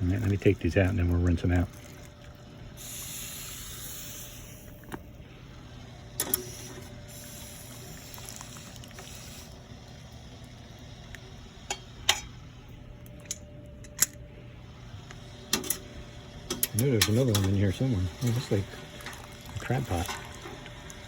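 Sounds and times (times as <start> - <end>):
liquid sloshing: 0.0 - 3.0, 16.8 - 21.0
low hum: 0.0 - 21.0.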